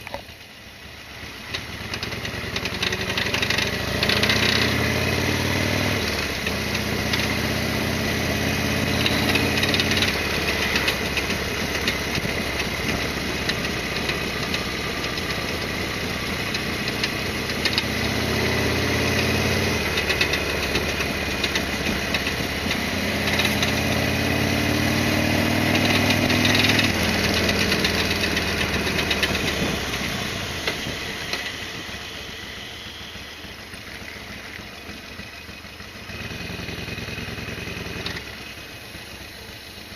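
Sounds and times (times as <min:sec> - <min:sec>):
motorcycle engine revving: 0:01.1 - 0:39.9.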